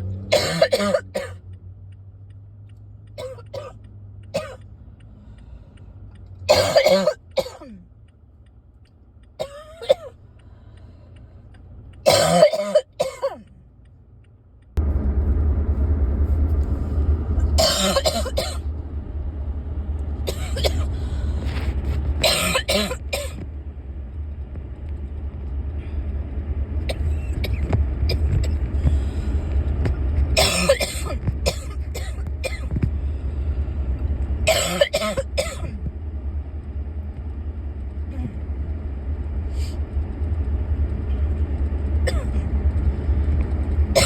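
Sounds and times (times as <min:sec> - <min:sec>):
steady low rumble: 0:00.0 - 0:44.0
person coughing: 0:00.3 - 0:01.4, 0:06.5 - 0:07.8, 0:12.1 - 0:13.4, 0:17.6 - 0:18.6, 0:20.3 - 0:20.9, 0:34.5 - 0:35.8.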